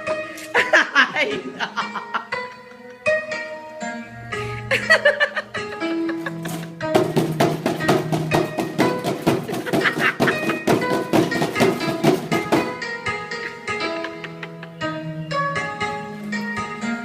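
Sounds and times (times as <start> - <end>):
held melodic notes: 0.0 - 17.0
drum and wood-block strikes: 6.5 - 12.9.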